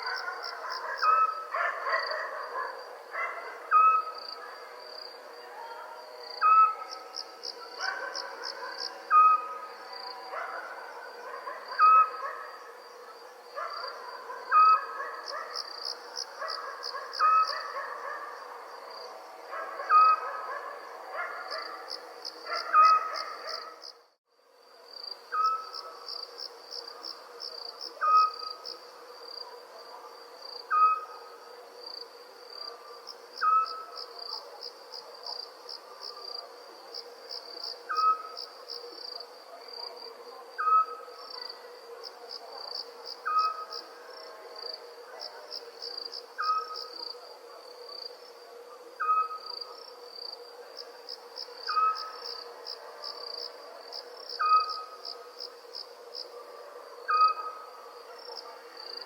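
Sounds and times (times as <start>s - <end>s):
crickets chirping: 0.0s - 59.0s
owl hooting: 3.7s - 4.2s, 6.4s - 6.8s, 11.8s - 12.4s, 17.2s - 17.8s, 25.3s - 25.8s, 30.7s - 31.2s, 33.4s - 34.0s, 37.9s - 38.4s, 46.4s - 46.9s, 49.0s - 49.7s, 51.7s - 52.2s, 57.1s - 57.7s.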